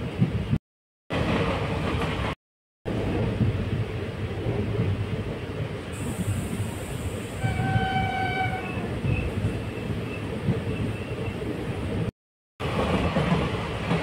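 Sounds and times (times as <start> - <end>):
train rumbling: 0.0 - 14.0
train horn: 7.4 - 8.9.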